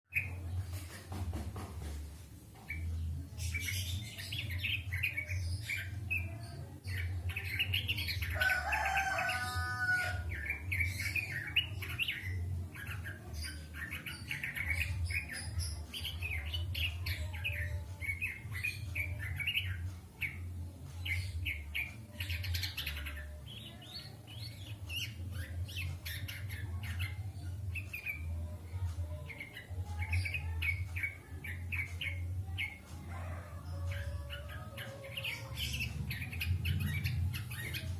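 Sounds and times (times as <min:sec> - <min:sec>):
songbird singing: 0:02.5 - 0:37.9.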